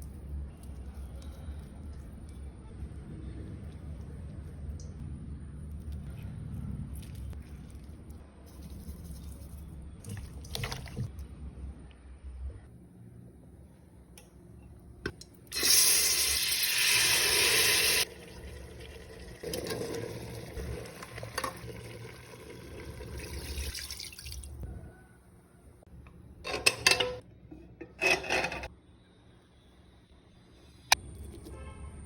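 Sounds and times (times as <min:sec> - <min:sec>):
tap running water: 0:15.6 - 0:24.4.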